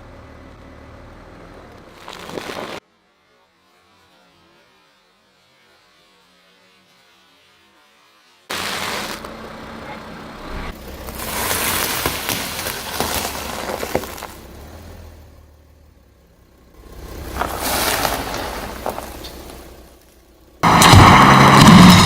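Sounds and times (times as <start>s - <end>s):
car tyres crushing objects: 1.7s - 2.8s, 8.5s - 9.5s, 10.5s - 15.5s, 16.8s - 22.0s.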